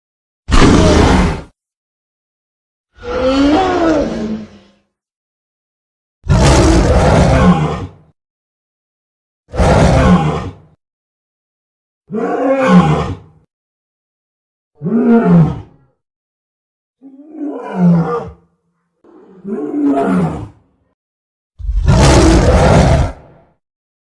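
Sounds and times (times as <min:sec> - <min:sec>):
gorilla roaring: 0:00.5 - 0:01.5, 0:03.0 - 0:04.7, 0:06.3 - 0:08.0, 0:09.5 - 0:10.7, 0:12.1 - 0:13.3, 0:17.0 - 0:18.4, 0:19.1 - 0:20.6, 0:21.6 - 0:23.5.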